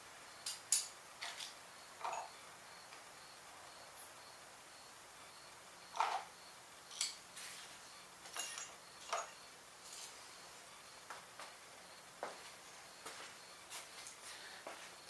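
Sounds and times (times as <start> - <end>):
hand tools clinking on metal: 8.2 - 9.4.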